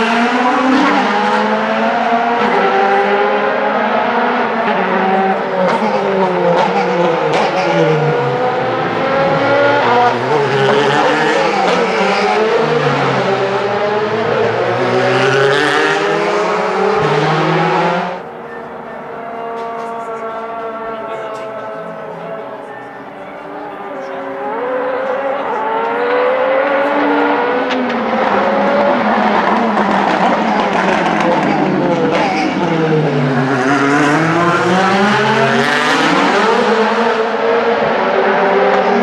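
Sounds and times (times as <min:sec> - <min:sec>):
racing car engines revving: 0:00.0 - 0:39.0.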